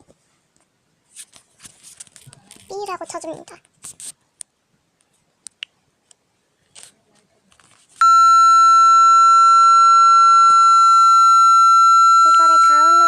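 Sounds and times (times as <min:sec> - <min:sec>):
high censor beep tone: 0:08.0 - 0:13.0.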